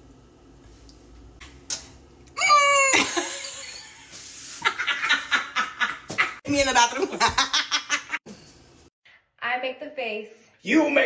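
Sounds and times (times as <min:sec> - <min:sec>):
person squealing: 0:02.4 - 0:03.6
person laughing: 0:02.4 - 0:06.4.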